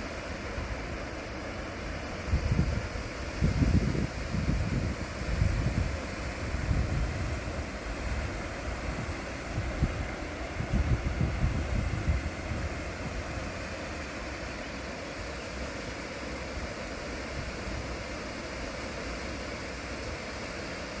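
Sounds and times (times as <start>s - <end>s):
water rushing from waterfall: 0.0s - 21.0s
wind buffeting microphone: 2.3s - 13.4s.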